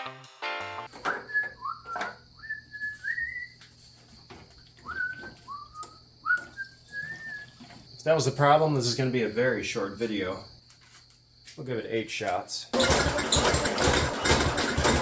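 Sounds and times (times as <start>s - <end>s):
person whistling a tune: 1.2s - 3.6s, 4.9s - 7.5s.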